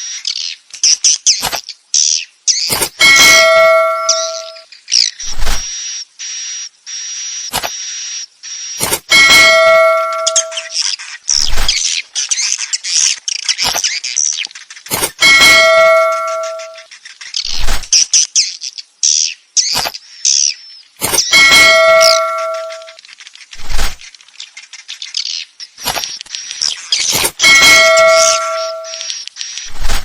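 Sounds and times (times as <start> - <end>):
swiftlet chirps and twitters: 2.5 - 5.8, 8.6 - 11.8, 15.2 - 16.9, 21.1 - 23.0, 27.0 - 29.1
ringing bell-like tone: 2.7 - 4.7, 8.8 - 10.8, 15.0 - 16.9, 21.0 - 23.0, 27.2 - 29.1.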